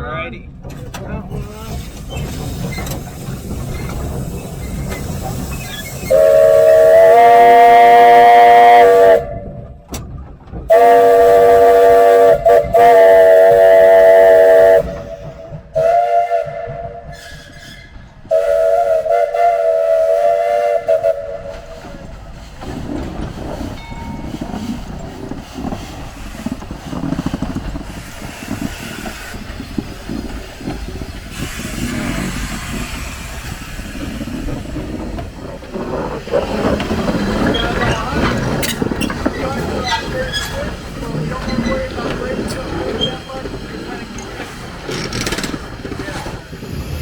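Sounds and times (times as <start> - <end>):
steam engine rhythmic clatter: 0.4 - 47.0
steam locomotive chime whistle: 5.6 - 9.4, 10.7 - 21.5.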